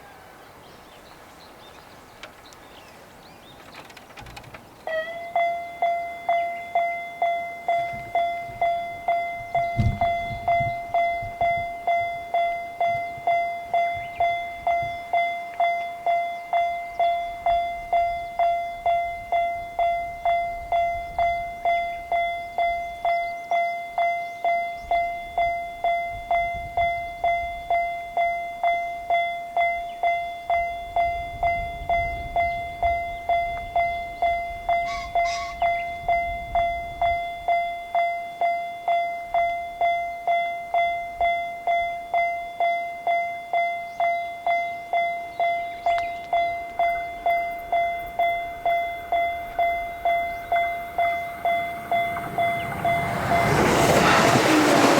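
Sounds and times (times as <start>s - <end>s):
railroad crossing bell ringing: 4.8s - 54.9s
low thump: 9.4s - 10.8s.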